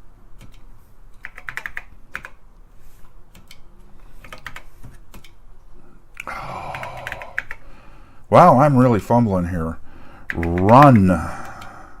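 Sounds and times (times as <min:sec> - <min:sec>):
keyboard keystrokes: 0:00.4 - 0:02.4, 0:03.3 - 0:03.6, 0:04.2 - 0:05.4, 0:06.2 - 0:07.6, 0:10.2 - 0:11.7.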